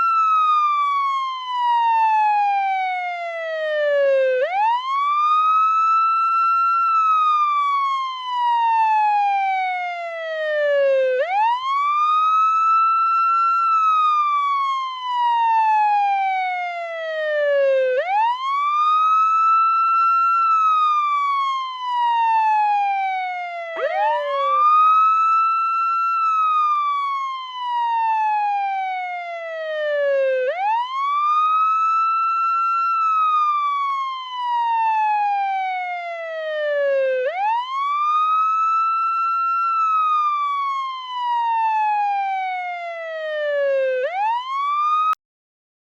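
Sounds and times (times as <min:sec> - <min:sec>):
ambulance siren wailing: 0:17.6 - 0:45.2.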